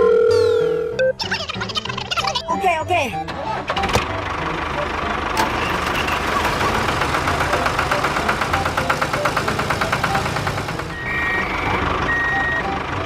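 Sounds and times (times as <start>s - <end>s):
vehicle engine chugging: 0.4s - 13.0s
reversing alarm beeping: 10.9s - 13.0s.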